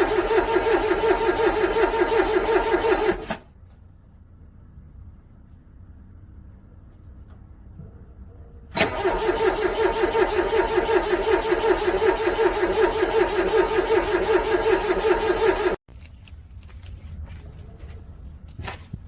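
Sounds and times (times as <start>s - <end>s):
car engine cranking: 0.0s - 3.5s, 8.7s - 15.8s.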